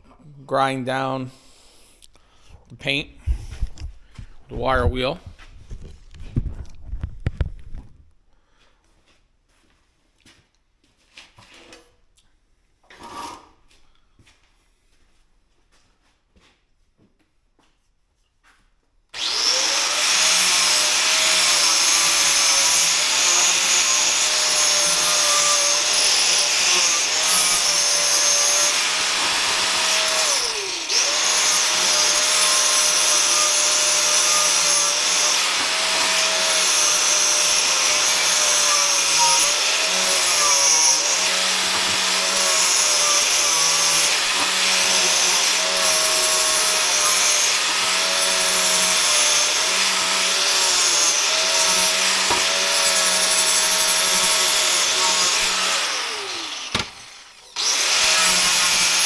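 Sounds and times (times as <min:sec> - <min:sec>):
wire wheel grinder scrubbing steel: 0:19.2 - 0:59.0.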